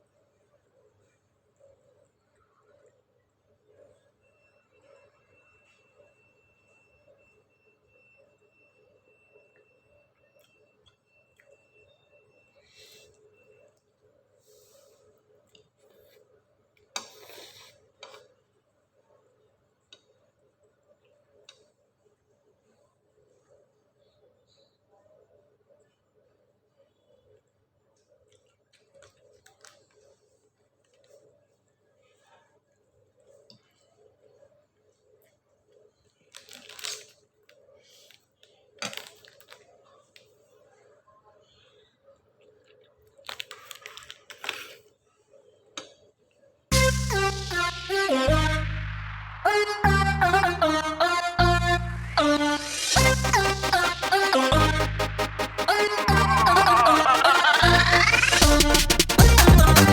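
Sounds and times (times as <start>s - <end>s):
quiet eating sounds: 0.0s - 6.1s, 8.2s - 46.7s
person eating noodles: 16.9s - 18.4s.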